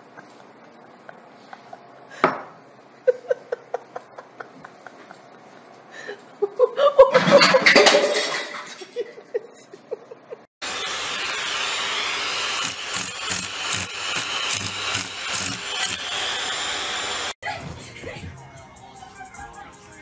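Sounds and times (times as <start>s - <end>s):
background music: 17.4s - 20.0s.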